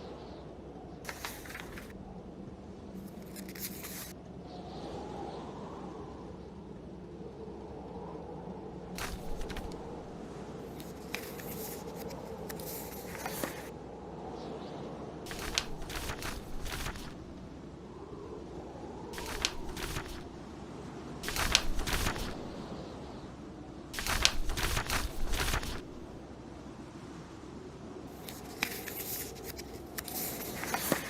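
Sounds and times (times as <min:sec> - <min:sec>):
low blizzard wind: 0:00.0 - 0:31.0
paper rustling: 0:01.1 - 0:01.9, 0:03.0 - 0:04.1, 0:09.0 - 0:13.7, 0:15.3 - 0:17.4, 0:19.2 - 0:20.4, 0:21.2 - 0:22.6, 0:24.0 - 0:26.2, 0:28.2 - 0:31.0.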